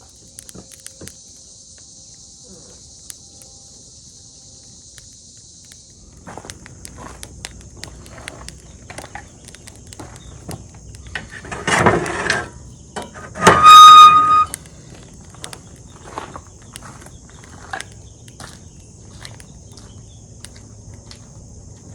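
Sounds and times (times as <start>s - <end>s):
high insect drone: 0.0s - 21.9s
footsteps: 6.2s - 21.9s
horn-like beep: 13.4s - 14.6s.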